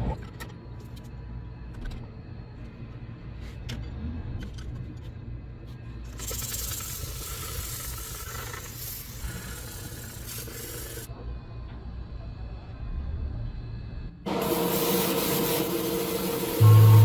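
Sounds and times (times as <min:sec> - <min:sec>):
abrasive sanding on metal: 0:14.4 - 0:17.0.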